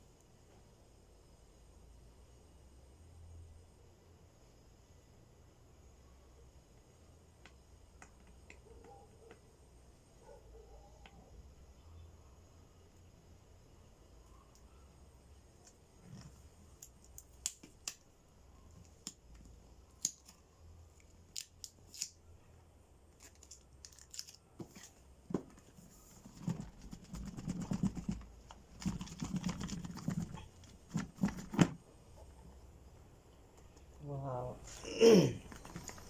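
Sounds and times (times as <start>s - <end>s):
sharp clicks and snaps: 7.4s - 9.5s, 16.8s - 18.1s
packaging rustling and scraping: 23.2s - 31.8s, 35.5s - 36.0s.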